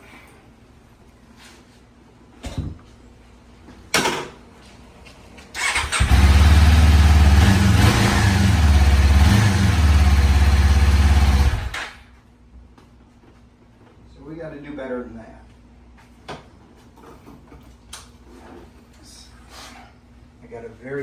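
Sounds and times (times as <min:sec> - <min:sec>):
motorcycle engine idling: 0:05.6 - 0:11.8.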